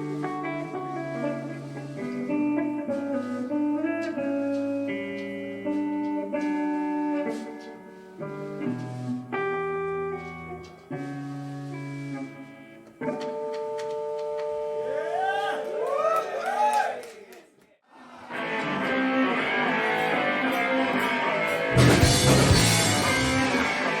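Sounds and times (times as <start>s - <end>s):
solo guitar fingerpicking: 0.0s - 14.4s.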